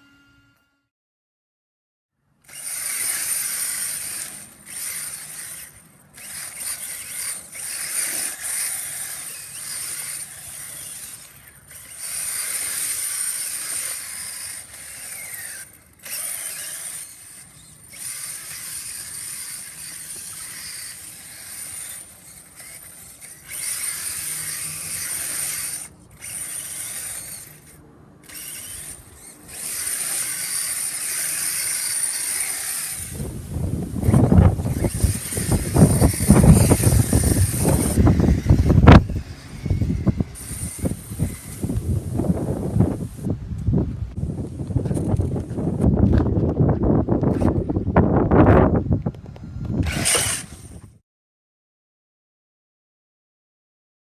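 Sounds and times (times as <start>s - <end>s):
toy car drivetrain whirring: 2.4s - 43.3s, 47.2s - 47.7s, 49.2s - 51.0s.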